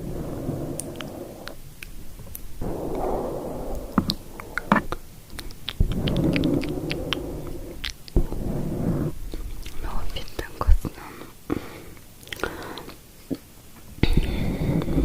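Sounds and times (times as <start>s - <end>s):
wet mouth clicks: 0.7s - 2.4s, 4.0s - 8.3s, 12.2s - 13.5s.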